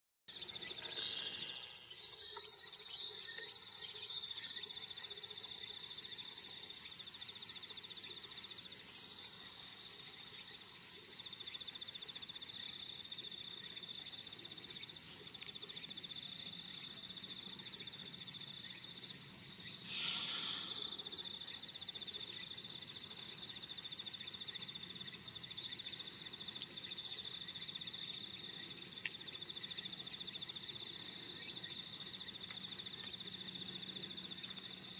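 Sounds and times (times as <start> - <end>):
high-pitched insect chorus: 0.3 - 34.9
short burst of noise: 19.9 - 21.2.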